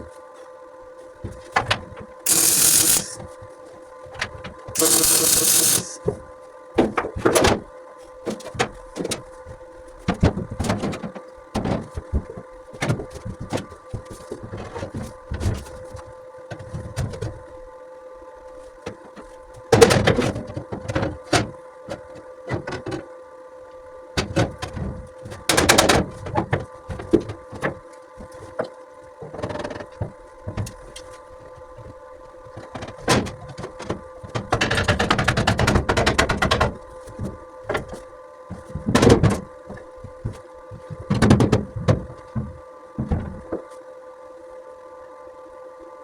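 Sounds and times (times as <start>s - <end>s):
bursts of machine noise: 2.3s - 3.2s, 4.8s - 6.0s
steady hum: 2.3s - 3.2s, 4.8s - 6.0s.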